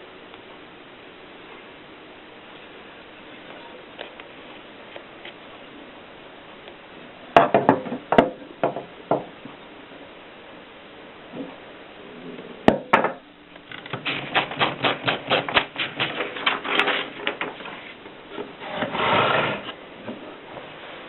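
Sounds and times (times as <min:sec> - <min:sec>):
typewriter rasping: 0:13.8 - 0:17.5.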